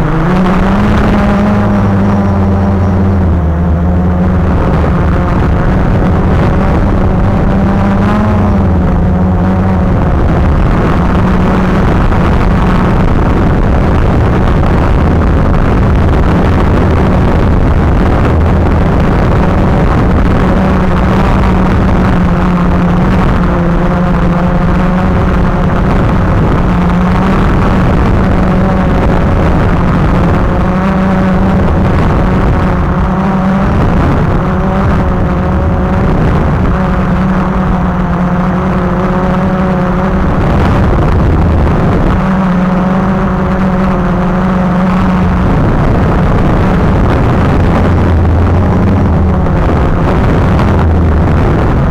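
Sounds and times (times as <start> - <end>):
drone propellers buzzing: 0.0 - 51.9.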